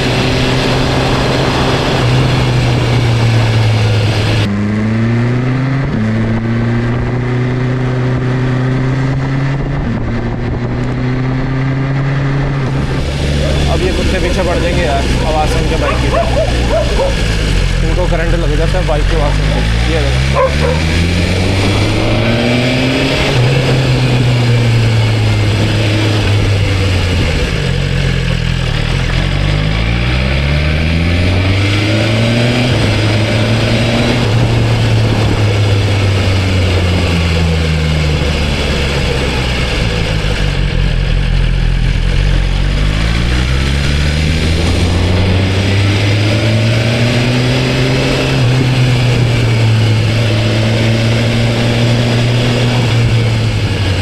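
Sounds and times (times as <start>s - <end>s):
sport motorcycle engine revving: 0.0s - 54.0s
steady rush of noise: 12.6s - 26.6s.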